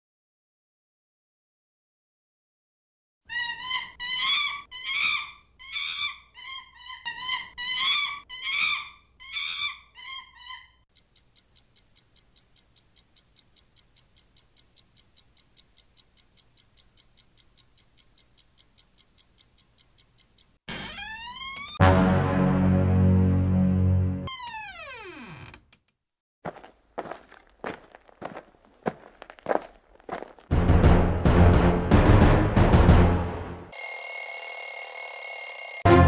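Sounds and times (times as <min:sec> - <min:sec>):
quiet even ticking: 0:10.9 - 0:21.7.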